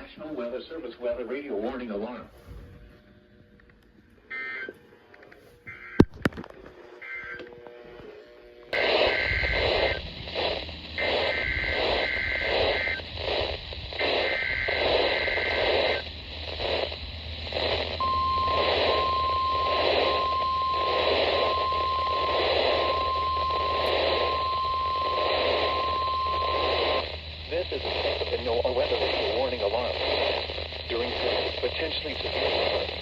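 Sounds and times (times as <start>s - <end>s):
radio static: 5.6s - 33.0s
warbling data bursts: 8.8s - 27.7s
steady warning alarm tone: 18.0s - 27.1s.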